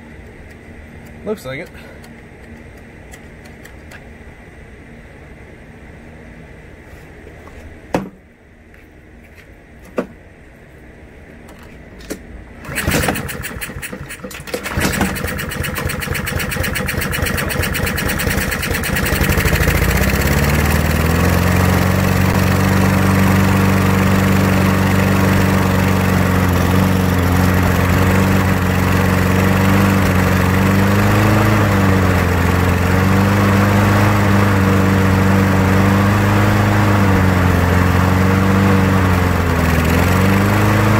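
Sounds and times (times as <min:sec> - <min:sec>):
lawnmower engine starting and running: 0:12.5 - 0:40.9.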